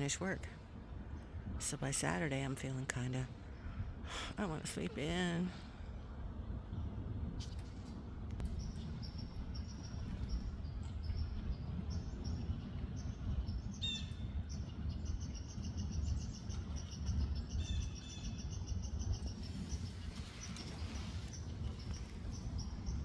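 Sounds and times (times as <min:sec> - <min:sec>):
low outdoor rumble: 0:00.0 - 0:23.0
small birds chirping: 0:08.4 - 0:23.0.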